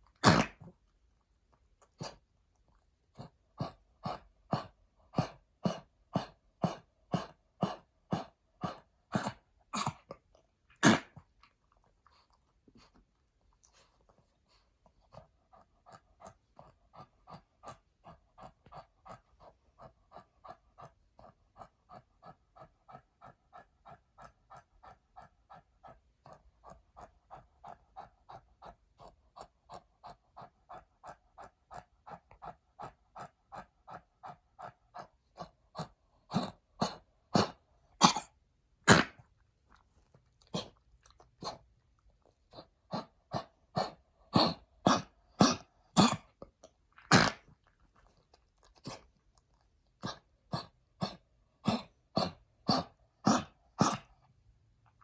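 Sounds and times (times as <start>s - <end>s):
dog coughing harshly: 0.2s - 0.6s, 10.8s - 11.2s, 36.8s - 38.3s, 38.9s - 39.2s, 44.3s - 46.2s, 47.1s - 47.4s, 51.6s - 54.0s.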